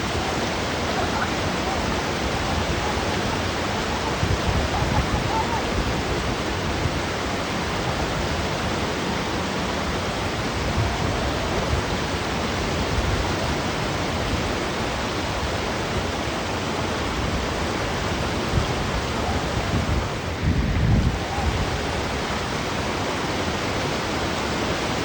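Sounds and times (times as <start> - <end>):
whitewater rushing: 0.0 - 25.0.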